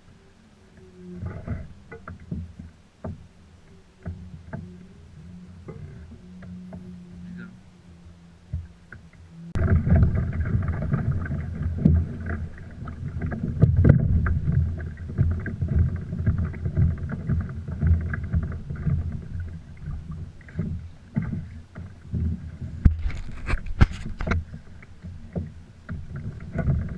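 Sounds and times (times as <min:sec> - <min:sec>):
water slapping against kayak hull: 0:08.5 - 0:26.9.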